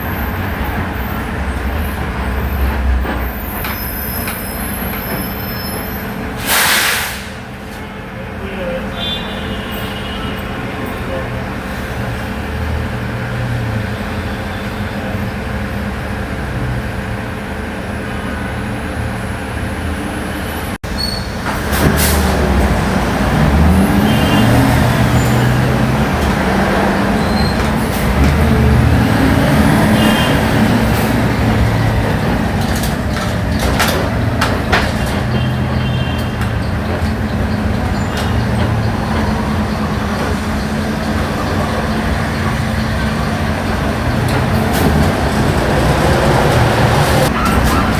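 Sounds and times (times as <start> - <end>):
bus engine drone: 10.0 - 47.9
clicks and knocks: 32.0 - 39.3.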